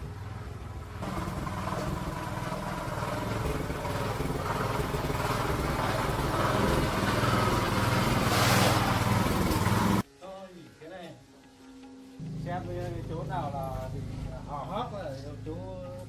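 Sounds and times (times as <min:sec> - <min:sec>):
small gasoline engine running: 0:00.0 - 0:10.0.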